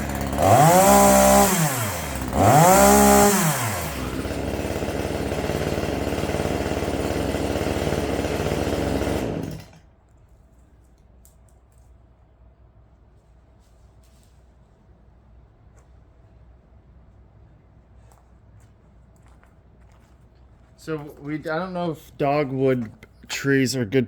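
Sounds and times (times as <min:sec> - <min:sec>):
chainsaw revving and running: 0:00.0 - 0:09.8.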